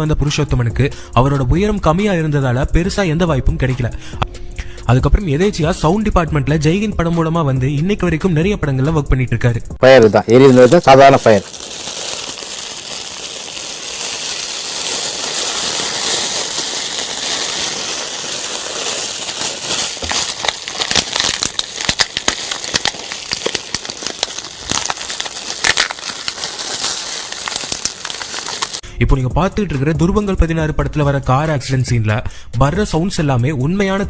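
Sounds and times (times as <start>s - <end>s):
fire crackling and popping: 10.1s - 28.8s
fire hissing: 10.2s - 28.8s.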